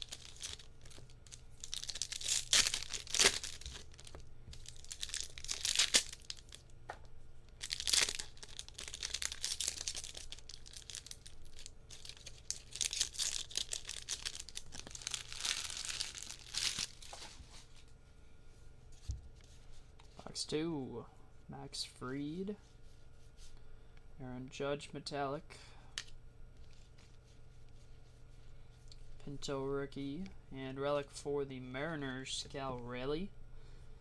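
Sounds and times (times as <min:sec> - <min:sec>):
plastic wrappers tearing and crinkling: 0:00.0 - 0:06.7, 0:07.6 - 0:17.4.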